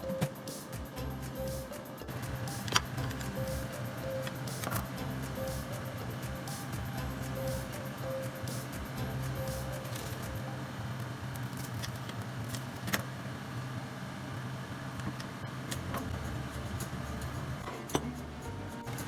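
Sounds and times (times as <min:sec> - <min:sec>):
low hum: 0:00.0 - 0:10.9.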